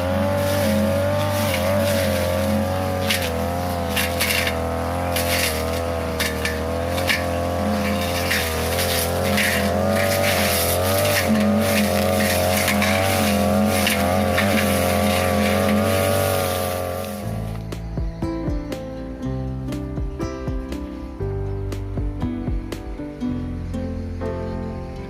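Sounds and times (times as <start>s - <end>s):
blade cutting grass and brush: 0.0s - 17.9s
brush cutter engine running: 0.0s - 17.9s
guitar music: 0.0s - 25.0s.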